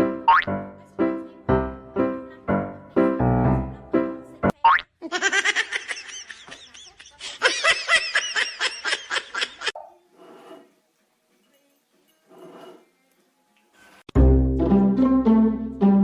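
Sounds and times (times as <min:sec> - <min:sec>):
person laughing: 0:05.0 - 0:09.7.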